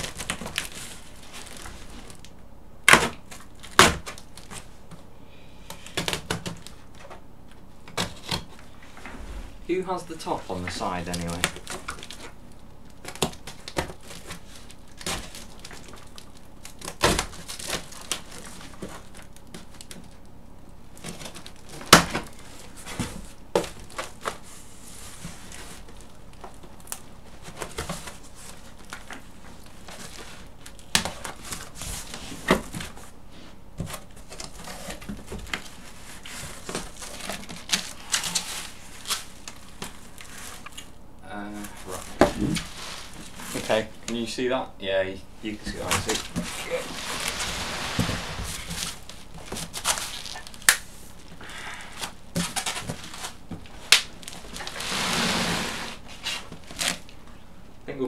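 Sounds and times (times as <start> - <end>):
packing crinkling: 0.0 - 4.7, 10.5 - 33.2, 33.8 - 44.3, 45.6 - 57.4
cardboard box being opened: 45.7 - 50.6.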